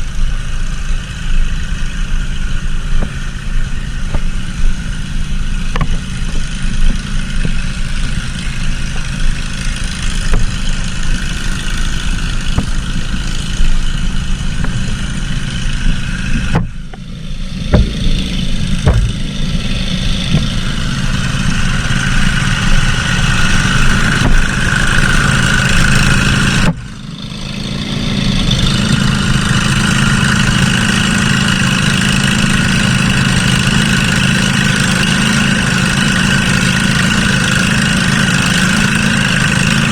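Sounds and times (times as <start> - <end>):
small engine running under load: 0.0 - 39.9
sharp knocks: 5.7 - 7.6, 10.3 - 10.7, 12.5 - 13.4, 15.9 - 19.4, 20.2 - 20.8.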